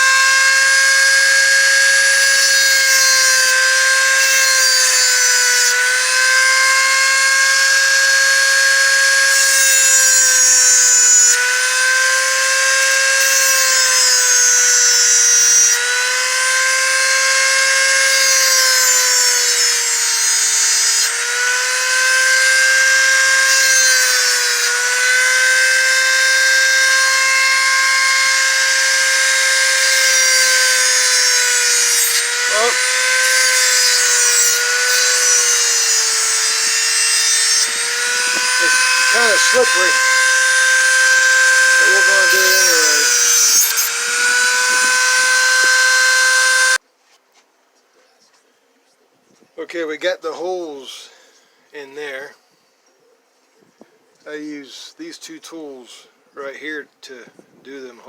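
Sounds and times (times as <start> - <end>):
electric drill whining into metal: 0.0 - 46.8.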